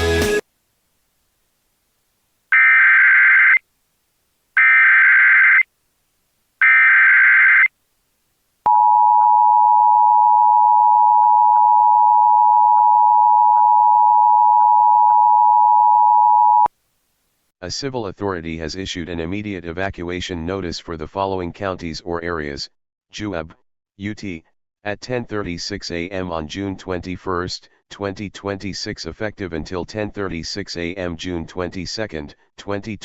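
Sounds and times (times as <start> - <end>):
screeching digital data chirps: 4.6 - 5.6.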